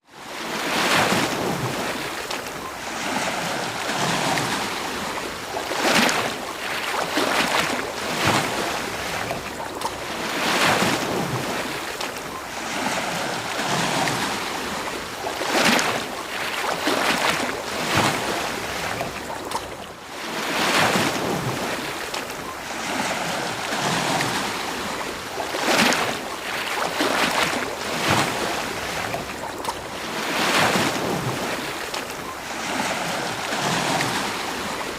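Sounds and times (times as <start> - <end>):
ocean surf on a beach: 0.0 - 34.9.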